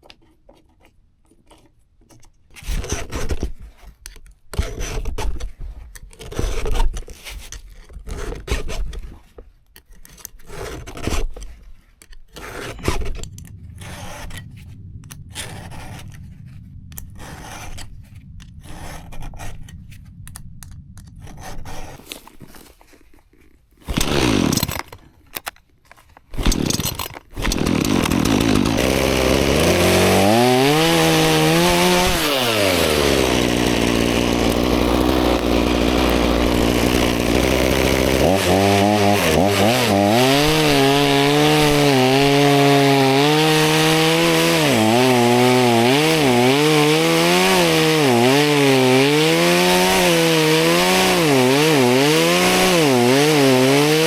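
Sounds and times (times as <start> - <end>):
chainsaw running and revving: 23.9 - 24.8, 26.4 - 54.0.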